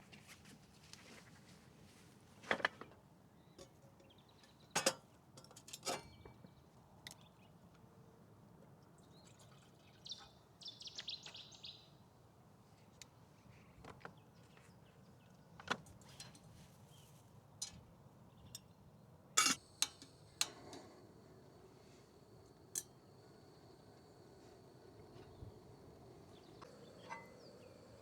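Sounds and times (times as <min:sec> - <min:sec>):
songbird twittering: 0:10.0 - 0:11.9, 0:19.7 - 0:28.0.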